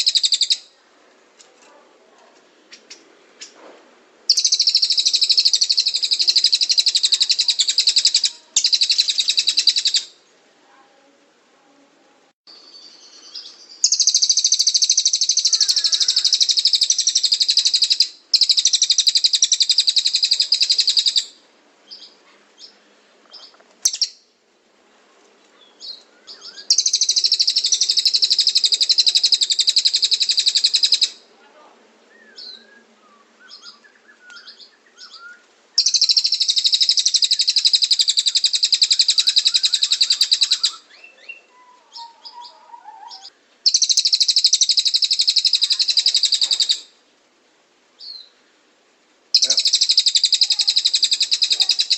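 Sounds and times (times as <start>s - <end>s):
bird trilling: 0.0s - 0.7s, 4.3s - 10.2s, 12.7s - 22.2s, 23.4s - 24.2s, 25.8s - 31.2s, 33.4s - 46.9s, 49.3s - 51.9s
short bird chirps: 49.4s - 51.9s.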